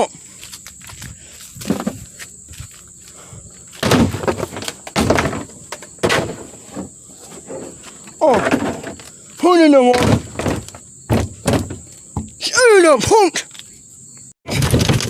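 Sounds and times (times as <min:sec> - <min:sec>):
dull thumps: 0:01.6 - 0:02.1, 0:03.8 - 0:13.4.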